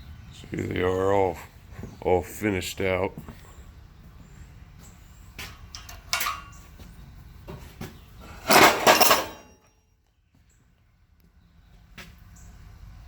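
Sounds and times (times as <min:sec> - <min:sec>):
metallic knocks and clinks: 0:05.5 - 0:06.6, 0:08.5 - 0:09.7
rattling clatter: 0:05.7 - 0:06.6, 0:08.4 - 0:09.5.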